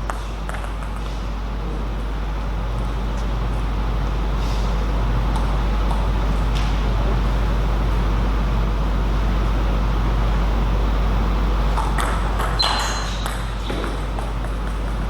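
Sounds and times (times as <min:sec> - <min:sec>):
low background rumble: 0:13.2 - 0:15.0.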